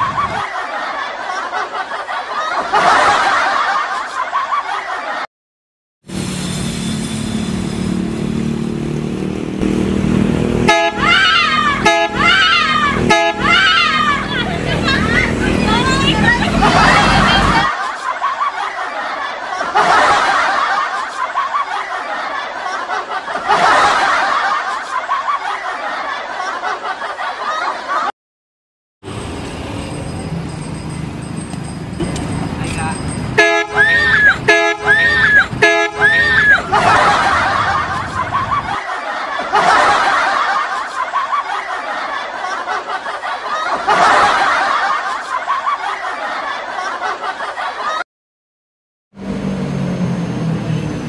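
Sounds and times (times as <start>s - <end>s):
people laughing: 0.0s - 5.3s, 11.0s - 28.1s, 32.6s - 48.0s
bus horn toot: 6.2s - 7.9s, 10.5s - 17.7s, 33.3s - 38.0s.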